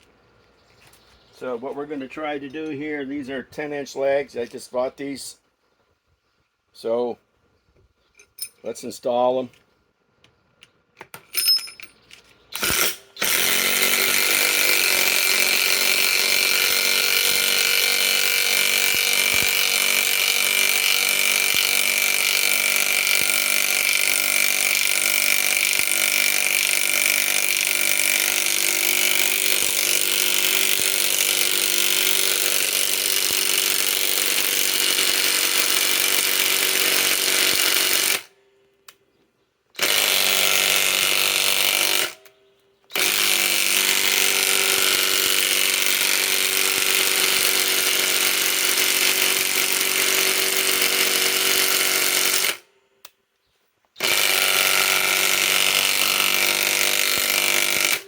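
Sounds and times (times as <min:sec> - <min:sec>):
light metallic clinks: 0:08.1 - 0:08.7, 0:11.3 - 0:12.2
impact wrench hammering: 0:12.6 - 0:38.3, 0:42.9 - 0:52.6.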